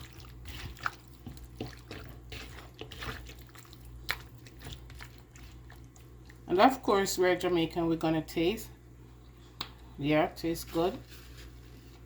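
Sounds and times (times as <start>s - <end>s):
hands squelching raw chicken: 0.0s - 6.5s.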